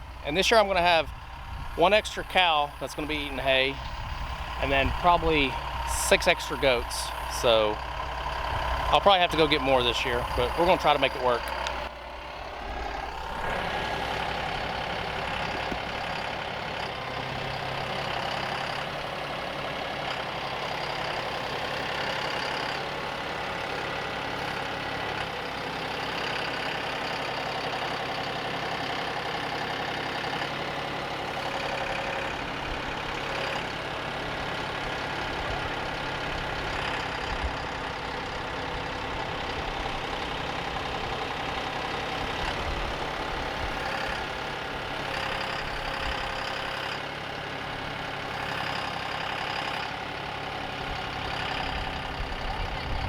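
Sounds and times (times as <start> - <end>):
tractor engine running: 0.0 - 53.0.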